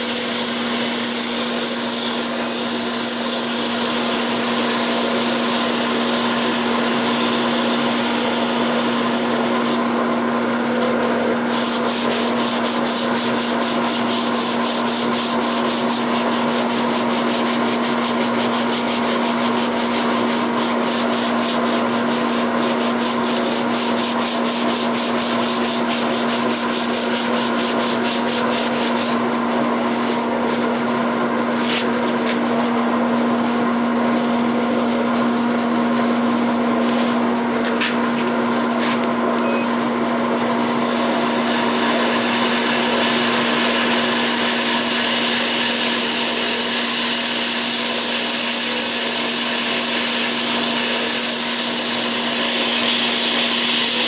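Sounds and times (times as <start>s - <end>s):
lathe motor humming: 0.1s - 32.5s, 38.4s - 54.0s
abrasive rubbing on spinning wood: 11.5s - 29.2s.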